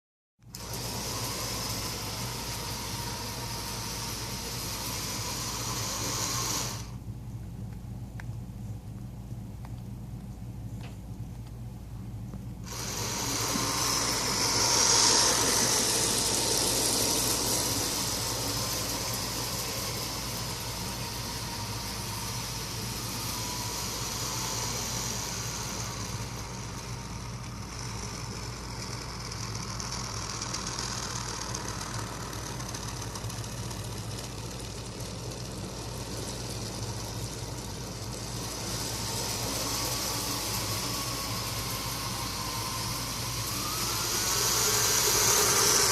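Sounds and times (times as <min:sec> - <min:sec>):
toy train motor whirring: 0:00.5 - 0:07.0, 0:12.6 - 0:45.9
train wheels rattling: 0:12.7 - 0:45.9.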